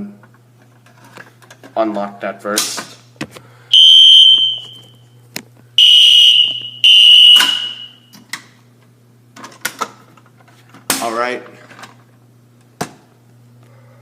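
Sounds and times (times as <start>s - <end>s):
fire alarm shrill tone: 3.7s - 5.0s, 5.8s - 8.1s.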